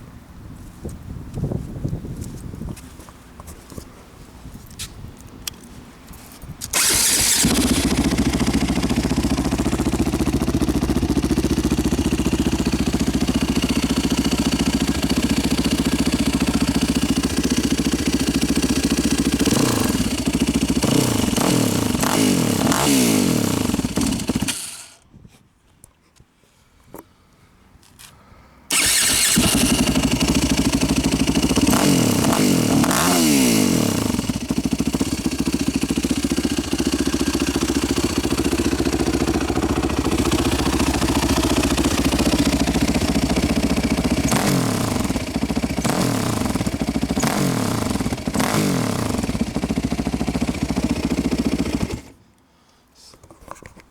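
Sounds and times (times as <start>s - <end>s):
motorcycle engine idling and revving: 6.6s - 25.0s, 28.7s - 52.2s.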